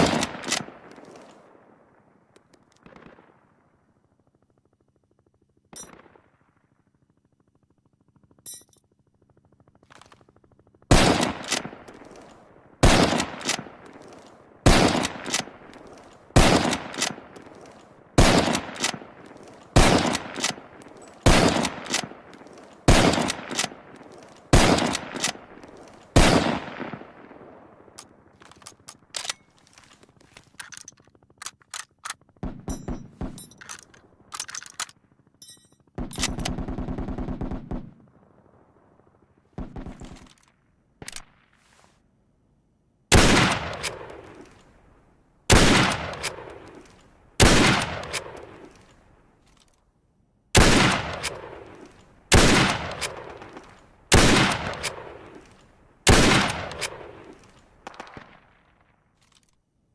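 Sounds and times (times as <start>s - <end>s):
rifle shots: 0.0s - 1.3s, 10.9s - 27.3s, 43.1s - 44.6s, 45.5s - 49.0s, 50.6s - 58.8s
reloading rattle: 0.0s - 1.4s, 10.9s - 26.7s, 28.0s - 36.6s, 43.4s - 44.8s, 45.5s - 49.8s, 50.6s - 58.3s, 59.2s - 59.6s
rifle bolt clicks: 28.4s - 32.2s, 33.4s - 36.5s.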